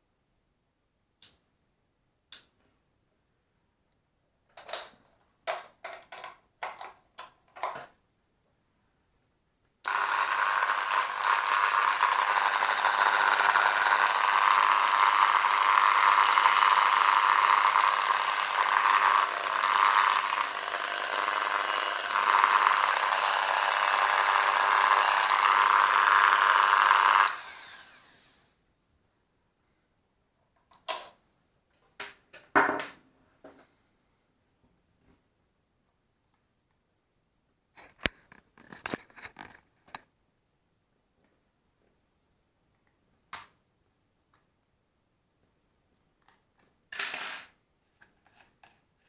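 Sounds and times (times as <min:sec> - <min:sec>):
rotary tool high whine: 0:09.9 - 0:28.5.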